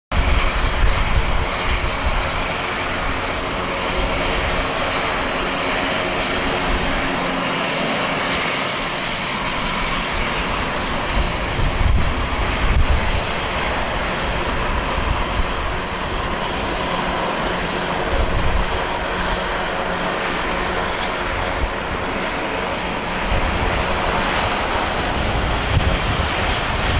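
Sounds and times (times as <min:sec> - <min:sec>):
jet engines running: 0:00.1 - 0:26.9.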